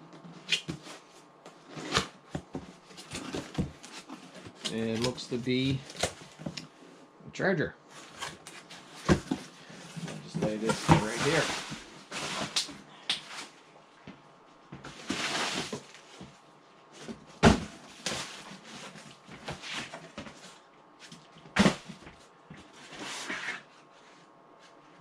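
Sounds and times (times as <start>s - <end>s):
cardboard rustling and scraping: 0.2s - 6.6s, 7.9s - 12.6s, 14.8s - 24.8s
cardboard thumps: 17.0s - 18.2s.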